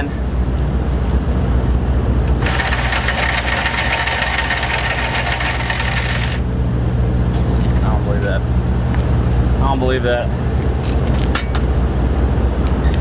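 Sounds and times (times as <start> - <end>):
steady low hum: 0.0 - 13.0
impact wrench hammering: 2.4 - 6.4.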